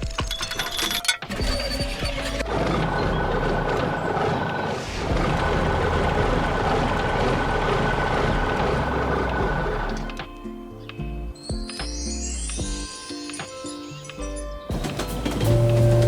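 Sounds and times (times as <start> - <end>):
heavy machinery engine running: 2.0 - 10.1, 14.8 - 16.0.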